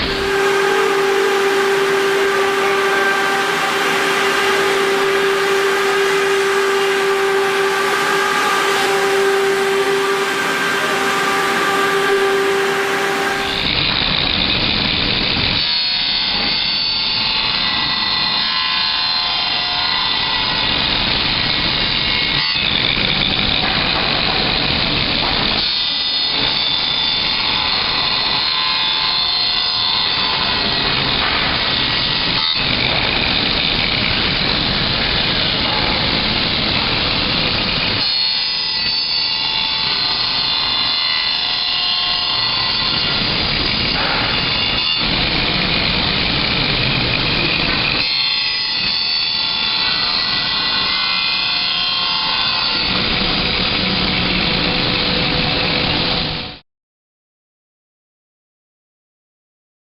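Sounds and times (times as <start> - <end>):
rough cutting noise: 0.0 - 13.8
cnc router spindle whine: 0.0 - 14.6, 24.2 - 56.6.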